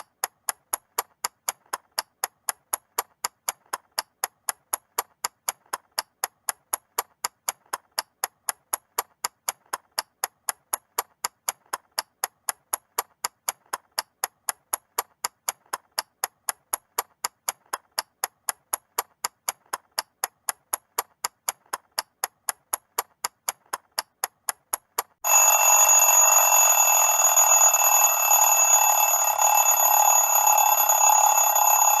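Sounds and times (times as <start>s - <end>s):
mechanical clock ticking: 0.0s - 25.2s
alarm ringing: 25.2s - 32.0s.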